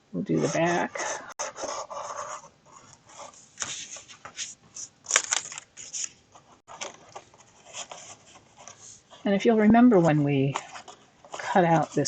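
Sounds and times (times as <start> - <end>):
paper rustling and crinkling: 3.2 - 9.0.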